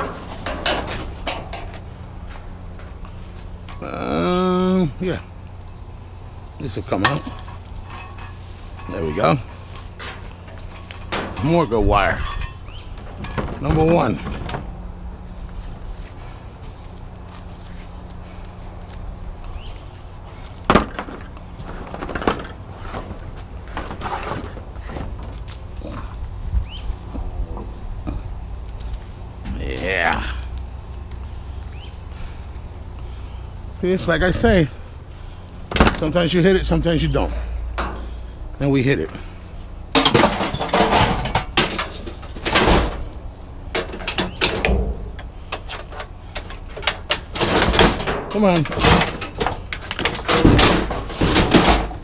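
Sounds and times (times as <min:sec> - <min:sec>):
scrap metal clattering: 0:00.0 - 0:01.9, 0:06.6 - 0:14.7, 0:20.4 - 0:25.4, 0:39.1 - 0:52.0
debris rattling and rustling: 0:00.0 - 0:04.2, 0:05.1 - 0:27.7, 0:39.1 - 0:52.0.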